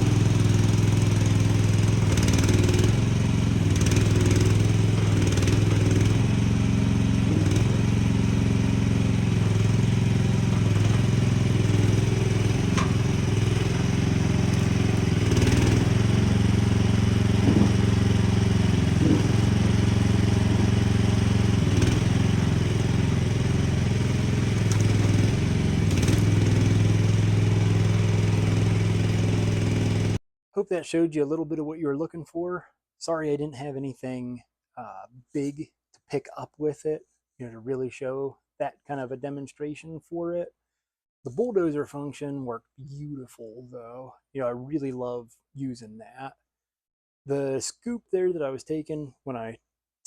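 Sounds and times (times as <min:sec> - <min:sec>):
skid steer engine running: 0:00.0 - 0:30.2.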